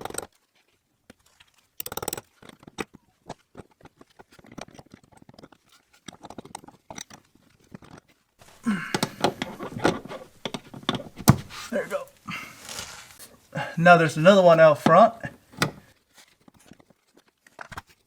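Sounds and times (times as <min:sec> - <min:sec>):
metal clicks knocks and scraping: 0:00.0 - 0:00.3, 0:01.8 - 0:02.8, 0:04.4 - 0:11.7.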